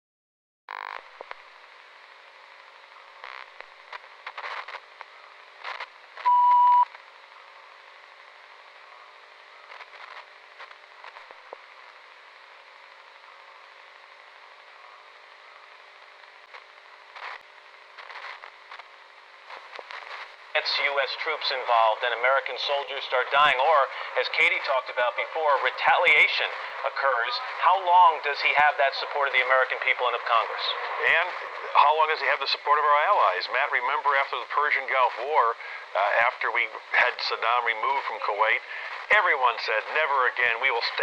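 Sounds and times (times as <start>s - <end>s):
radio static: 0.7s - 41.0s
loud steady beep: 6.2s - 6.9s.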